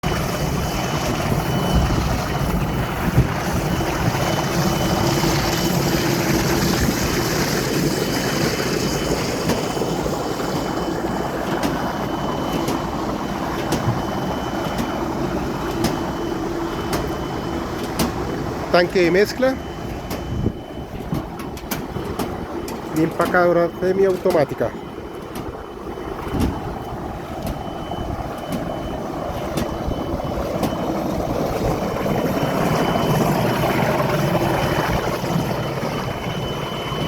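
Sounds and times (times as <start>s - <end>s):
washing machine running: 0.0s - 37.0s.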